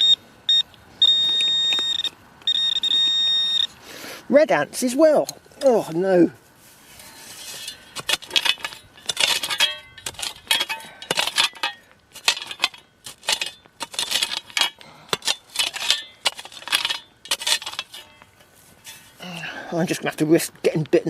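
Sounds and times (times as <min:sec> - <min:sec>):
metal tool scraping stones: 0:06.9 - 0:19.2.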